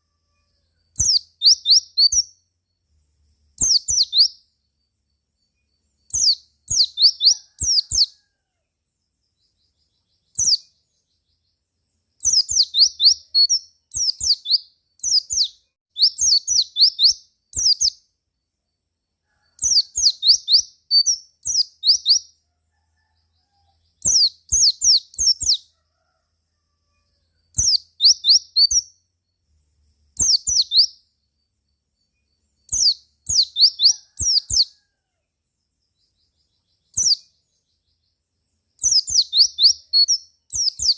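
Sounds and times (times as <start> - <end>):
bird chirping in rapid bursts: 1.0 - 2.4, 3.6 - 4.5, 6.0 - 8.1, 9.4 - 11.4, 12.2 - 18.0, 19.6 - 22.4, 24.0 - 25.7, 27.6 - 29.0, 30.2 - 31.0, 32.6 - 34.7, 36.2 - 37.5, 38.8 - 40.9.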